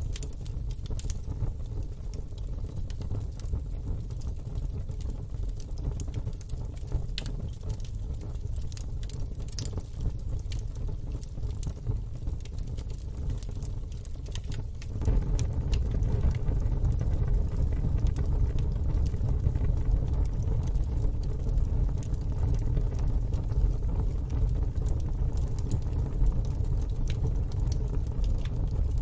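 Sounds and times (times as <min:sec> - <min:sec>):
wood fire crackling and popping: 0:00.0 - 0:29.0
low rumble: 0:15.0 - 0:22.1.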